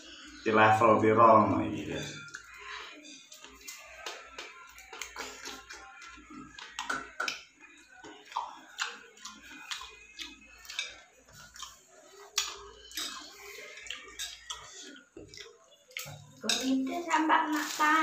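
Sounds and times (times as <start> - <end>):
person eating with mouth smacks: 4.0 - 7.4, 8.0 - 16.2.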